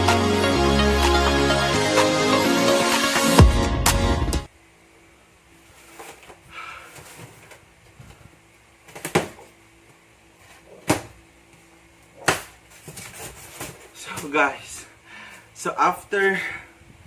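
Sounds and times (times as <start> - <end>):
cardboard rustling and scraping: 5.6 - 8.2, 12.2 - 14.4.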